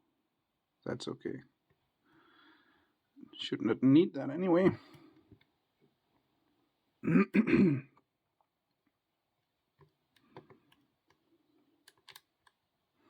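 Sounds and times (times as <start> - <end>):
man clearing throat: 7.0 - 8.0
lock pick clicking and scraping: 11.8 - 12.6.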